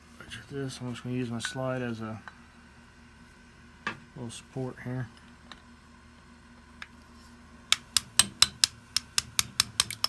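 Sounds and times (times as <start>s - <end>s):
hammer tapping steel punch: 7.7s - 10.0s.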